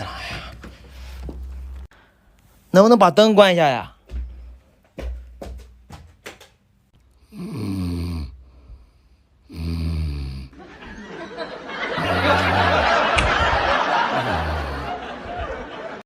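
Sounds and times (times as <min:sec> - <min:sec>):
man snoring loudly: 0:07.2 - 0:08.6, 0:09.4 - 0:10.6, 0:11.9 - 0:12.8, 0:14.1 - 0:15.0.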